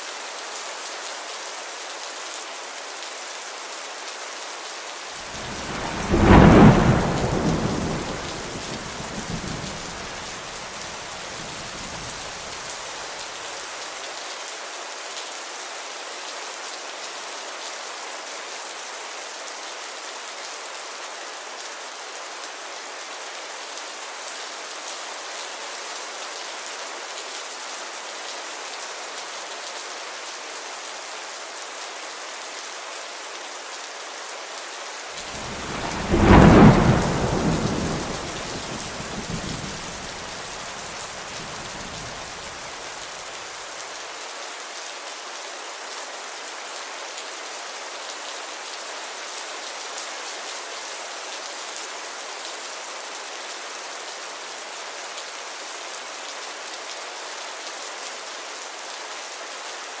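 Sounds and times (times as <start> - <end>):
steady rain: 0.0 - 60.0
thunder rumbling: 5.3 - 12.6, 35.3 - 42.8.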